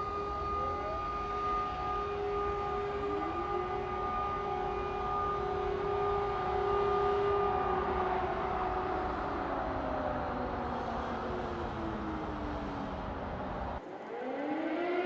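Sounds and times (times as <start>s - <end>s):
air raid sirens steady tones: 0.0s - 15.0s
siren winding up: 13.8s - 15.0s.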